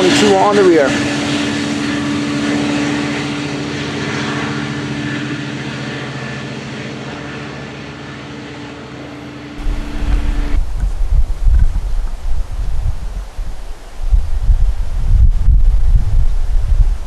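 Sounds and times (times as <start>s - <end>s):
diesel locomotive engine drone: 0.0s - 17.0s
wheel and rail noise: 9.4s - 14.0s
wind buffeting microphone: 9.6s - 17.0s.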